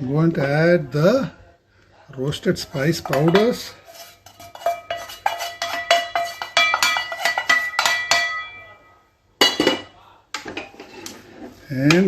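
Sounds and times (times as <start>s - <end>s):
metal spoon striking steel pot: 2.8s - 9.9s.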